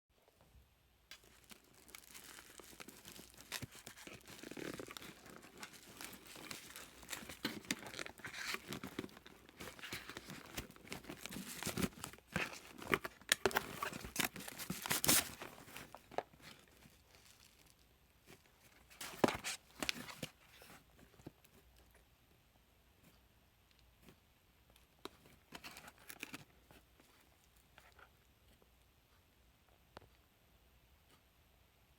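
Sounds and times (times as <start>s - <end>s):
packaging tearing and crinkling: 1.1s - 16.1s.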